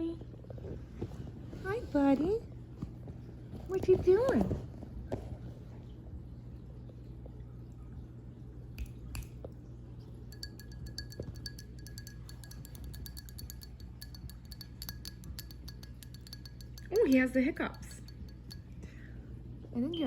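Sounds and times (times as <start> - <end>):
low steady hum: 0.0 - 20.0
rapid metallic clinking: 10.3 - 18.8.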